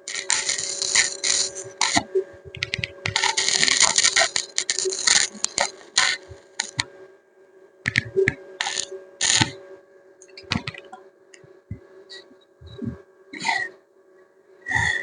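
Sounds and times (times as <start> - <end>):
steady low hum: 0.0 - 15.0
mechanical clicking: 7.9 - 9.5.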